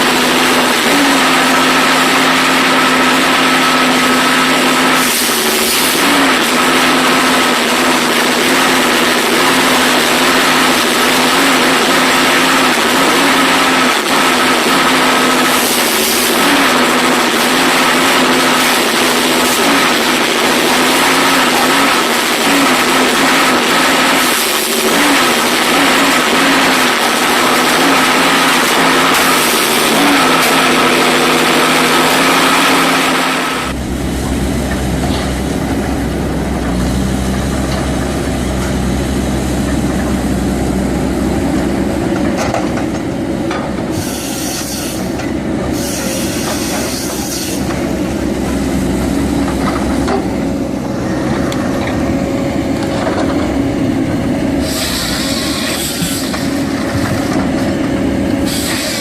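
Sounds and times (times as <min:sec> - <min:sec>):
loud noisy machinery with tones: 0:00.0 - 0:59.0
low steady engine hum: 0:33.6 - 0:44.0.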